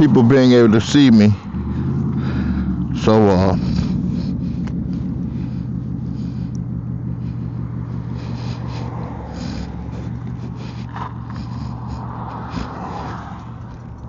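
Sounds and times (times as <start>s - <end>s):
road noise: 0.0s - 14.0s.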